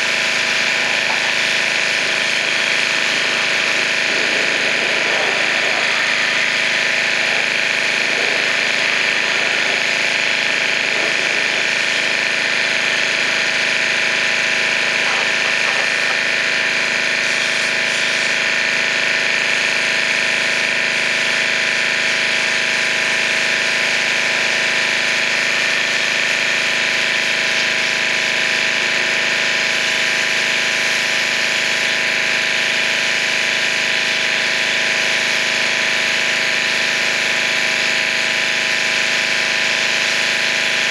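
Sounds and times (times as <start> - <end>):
high-pressure water spray hissing: 0.0 - 40.9
pressure washer motor drone: 0.0 - 40.9.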